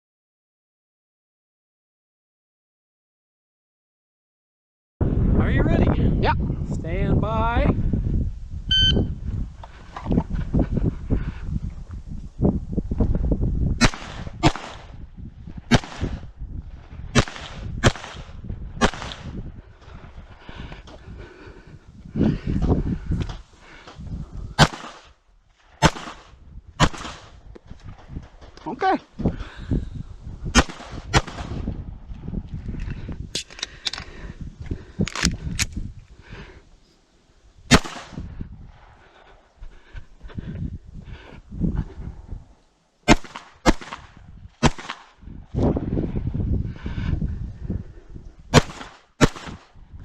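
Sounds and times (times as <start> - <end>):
pistol shots echoing: 17.2 - 18.2, 24.6 - 25.0, 25.8 - 27.3, 30.6 - 31.6, 37.7 - 38.2, 43.1 - 44.0, 44.6 - 45.0, 48.5 - 49.6.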